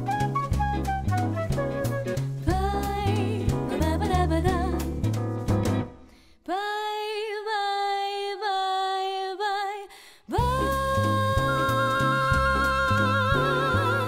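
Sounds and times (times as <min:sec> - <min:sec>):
jazzy band music: 0:00.0 - 0:05.9
low bass line: 0:00.0 - 0:05.9.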